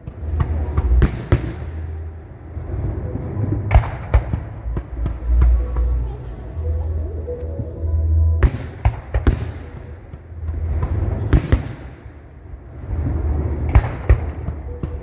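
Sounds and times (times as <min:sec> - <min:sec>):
fireworks bursting in bangs: 0:00.0 - 0:01.9, 0:08.4 - 0:15.0
steady low rumble: 0:00.0 - 0:15.0.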